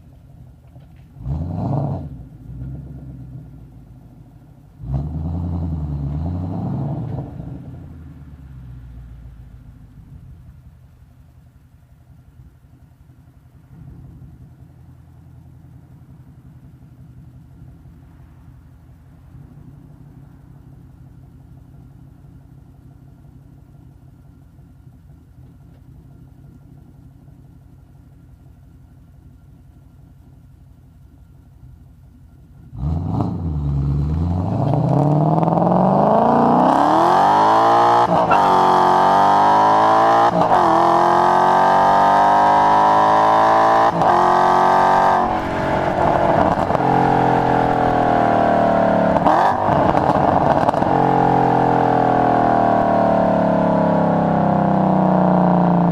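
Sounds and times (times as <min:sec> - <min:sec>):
car engine idling: 0:00.0 - 0:55.9
car engine revving hard: 0:01.2 - 0:03.2, 0:04.8 - 0:07.6, 0:32.8 - 0:55.9.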